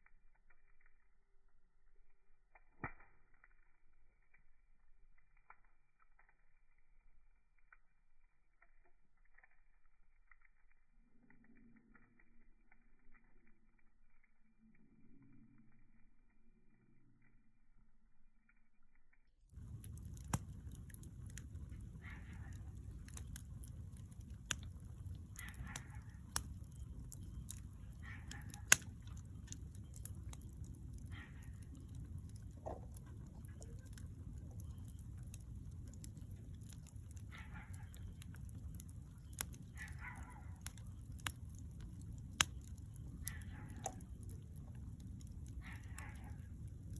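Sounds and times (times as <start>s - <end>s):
burning wood crackling pops: 2.5s - 6.9s, 19.5s - 46.9s
bonfire low rush: 19.6s - 40.0s, 40.6s - 46.9s.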